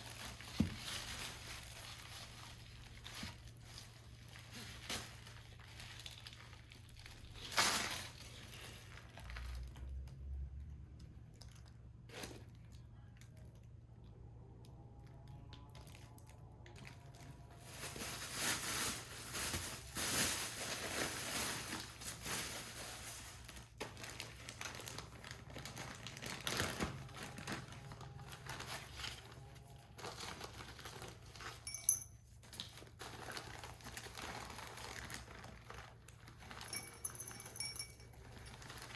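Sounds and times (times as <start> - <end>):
crinkling and rustling: 0.0 - 13.7, 15.3 - 38.9.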